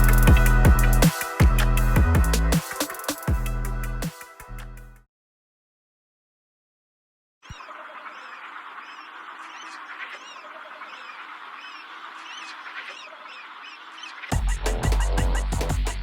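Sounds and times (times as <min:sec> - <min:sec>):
electronic music with bass drums: 0:00.0 - 0:05.0, 0:14.3 - 0:16.0
flock of birds chirping: 0:07.5 - 0:15.4.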